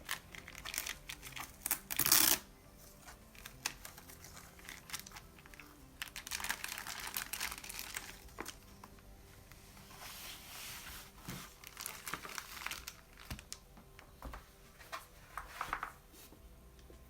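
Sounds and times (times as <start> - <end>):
plastic wrap crinkling: 0.0 - 2.4, 3.0 - 9.0, 9.9 - 13.6.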